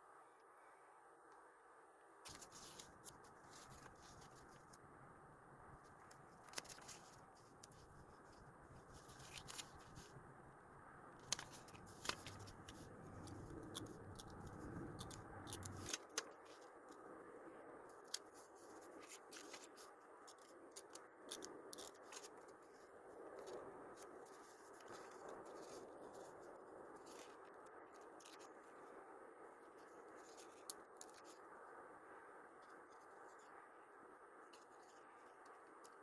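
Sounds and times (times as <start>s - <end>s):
soft paper rustles: 2.2s - 4.9s, 5.7s - 10.2s, 11.2s - 17.1s, 17.9s - 29.0s, 29.6s - 31.6s
low hum: 3.5s - 18.0s
small clicks of stickers: 11.2s - 17.0s.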